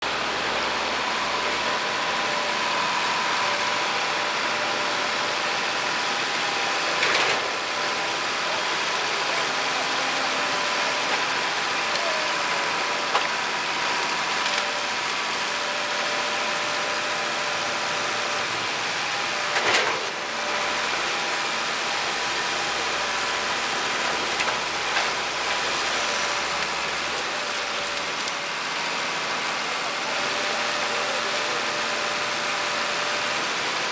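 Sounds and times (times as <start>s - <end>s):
grinder running: 0.0s - 33.9s.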